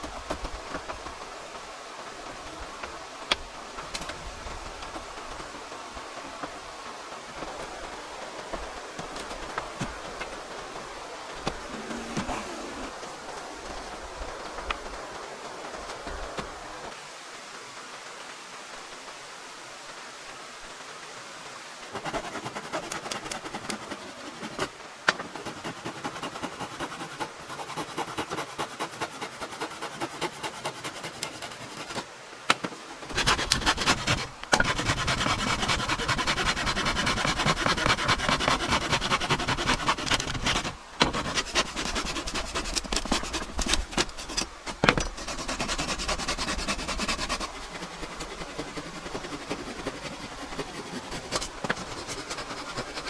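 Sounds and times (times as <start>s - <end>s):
tool rubbing on wood: 21.9s - 32.0s, 32.8s - 53.0s.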